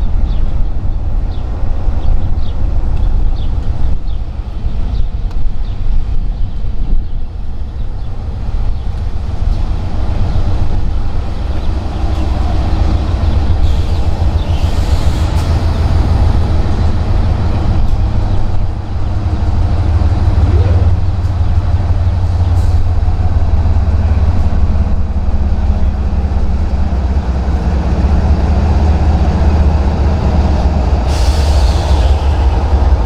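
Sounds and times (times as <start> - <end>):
train rumbling: 0.0 - 33.0
short high squeaks: 11.4 - 16.8.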